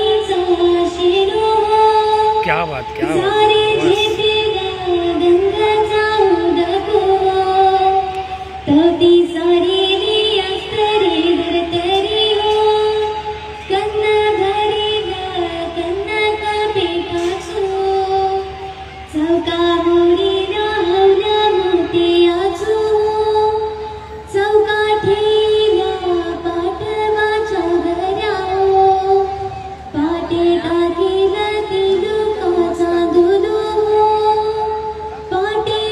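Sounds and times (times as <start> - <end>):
young woman singing folk song: 0.0 - 2.4, 3.2 - 35.9.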